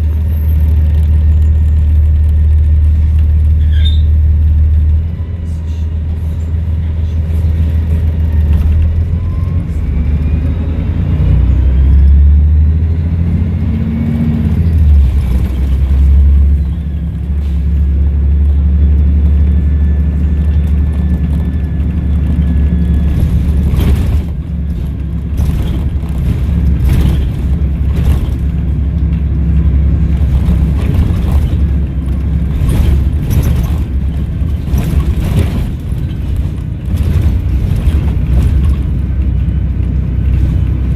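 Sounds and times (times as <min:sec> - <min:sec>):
bus engine rumbling: 0:00.0 - 0:40.9
turbo whistling: 0:03.6 - 0:04.2
knocks and rattles: 0:20.4 - 0:39.5.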